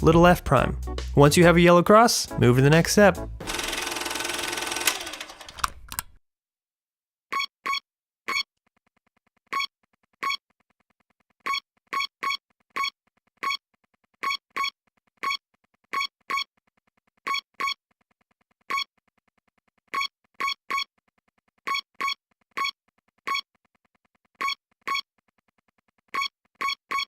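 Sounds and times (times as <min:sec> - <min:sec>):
bouncy synthesizer notes: 0:00.0 - 0:04.0.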